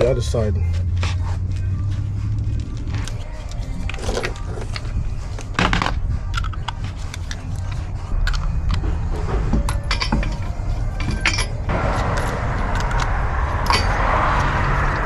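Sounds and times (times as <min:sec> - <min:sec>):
low steady hum: 0:02.8 - 0:15.0
metal hand tools clinking: 0:03.8 - 0:08.9, 0:09.5 - 0:15.0.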